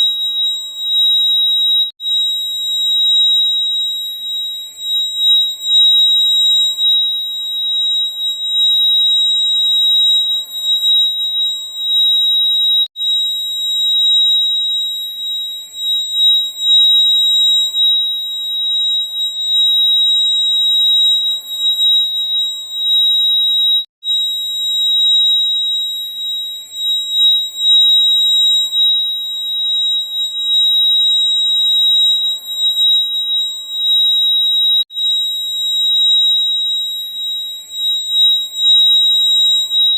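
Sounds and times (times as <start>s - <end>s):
fire alarm shrill tone: 0.0s - 39.9s.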